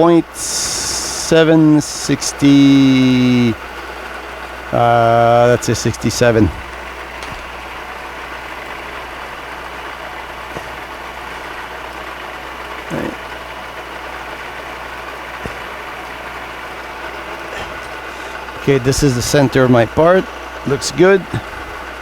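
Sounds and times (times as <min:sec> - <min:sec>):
milling machine humming: 0:00.0 - 0:22.0
faint clicks: 0:06.6 - 0:18.8.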